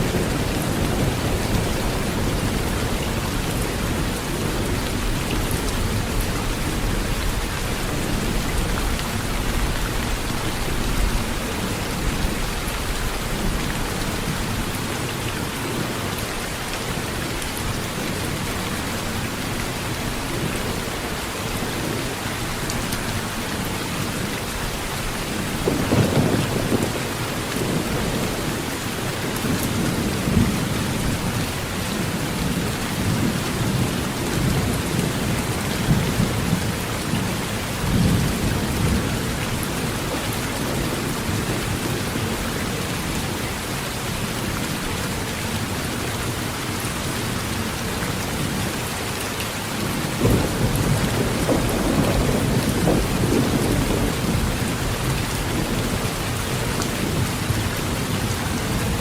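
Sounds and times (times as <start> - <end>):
heavy rain on a tin roof: 0.0 - 59.0
rolling thunder: 25.5 - 28.4, 50.1 - 56.1.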